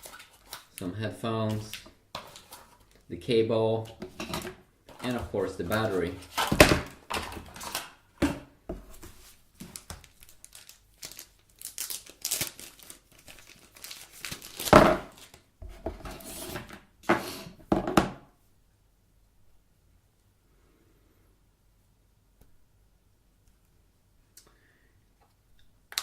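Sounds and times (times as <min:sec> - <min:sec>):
packaging crinkling and tearing: 0:00.0 - 0:00.9, 0:09.6 - 0:15.4.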